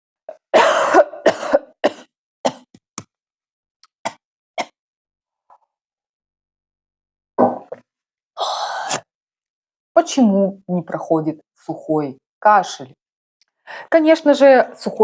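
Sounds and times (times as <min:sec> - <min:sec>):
person coughing: 0:00.5 - 0:02.7.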